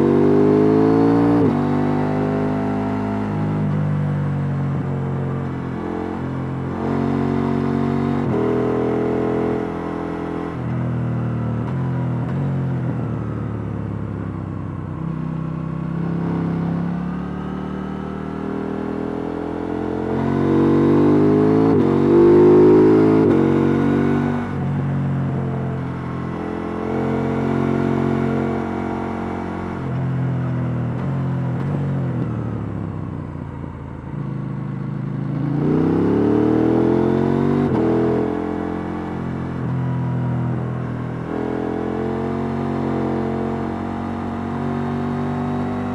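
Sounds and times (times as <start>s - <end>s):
motorcycle engine revving: 15.6s - 33.1s, 34.2s - 39.8s.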